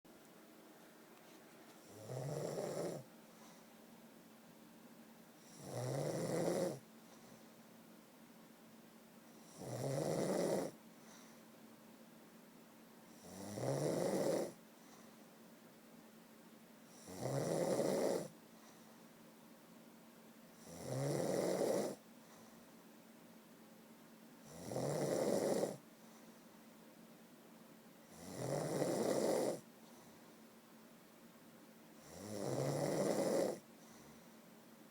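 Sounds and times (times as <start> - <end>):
quiet breathing: 0.8 - 4.0, 6.6 - 7.8, 10.7 - 11.7, 14.5 - 15.5, 17.9 - 19.3, 21.9 - 23.0, 25.7 - 26.8, 28.8 - 30.6, 33.0 - 34.6
person snoring: 1.8 - 3.1, 5.5 - 6.8, 24.5 - 25.8, 28.2 - 29.6, 32.0 - 33.6.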